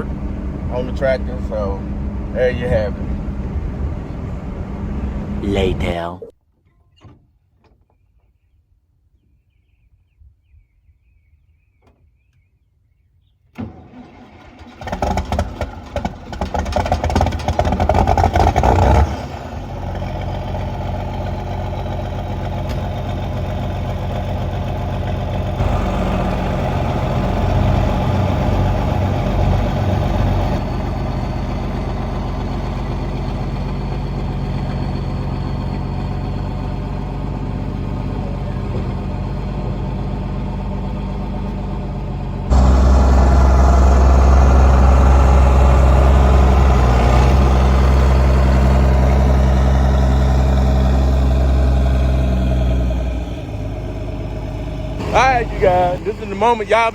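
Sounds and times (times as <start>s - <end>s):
engine starting and idling: 13.5s - 56.9s.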